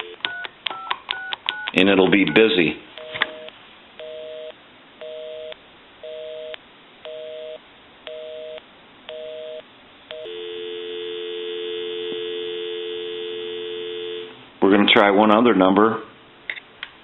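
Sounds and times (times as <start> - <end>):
continuous dial tone: 0.0 - 1.7, 2.3 - 14.4
telephone busy signal beeps: 3.0 - 14.3.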